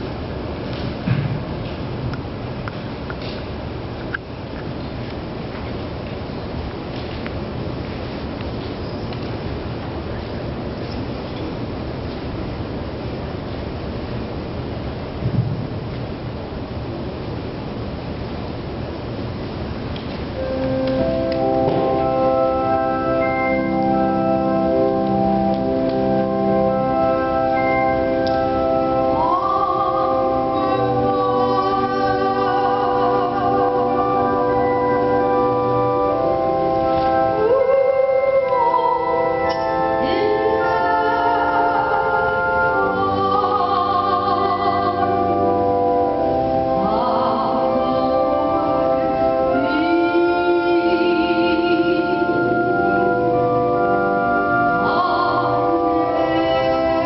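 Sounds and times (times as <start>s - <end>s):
organ sustained chords: 4.8s - 57.0s
singing with strong vibrato: 28.4s - 35.4s, 37.2s - 57.0s.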